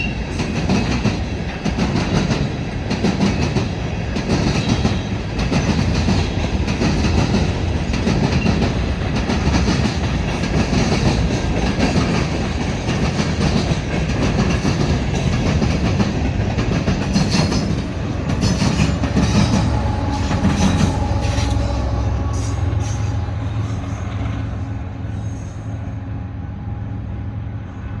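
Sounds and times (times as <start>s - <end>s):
train wheels rattling over rail joints: 0.0s - 25.8s
wheel squeal: 18.4s - 24.4s.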